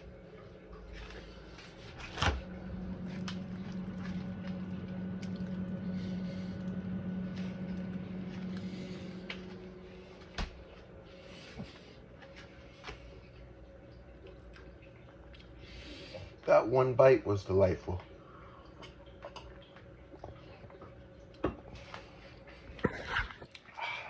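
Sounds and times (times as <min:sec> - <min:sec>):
steady low hum: 0:00.0 - 0:24.0
wet chewing: 0:14.2 - 0:15.7.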